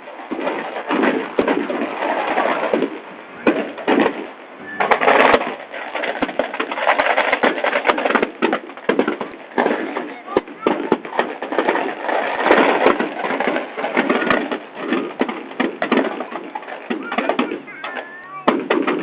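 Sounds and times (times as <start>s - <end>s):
bonfire crackling and popping: 0.0s - 19.0s.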